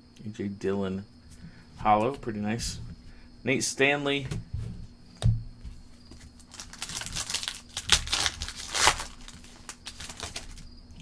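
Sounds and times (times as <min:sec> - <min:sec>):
foil wrapper tearing and crinkling: 0:06.4 - 0:10.6.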